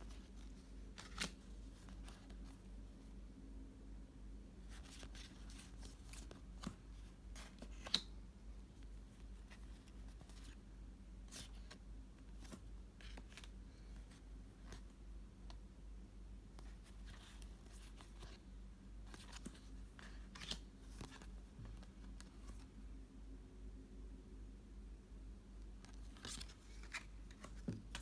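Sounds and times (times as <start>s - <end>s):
steady low hum: 0.0s - 28.0s
trading cards clicking and rustling: 1.0s - 2.4s, 7.4s - 8.1s.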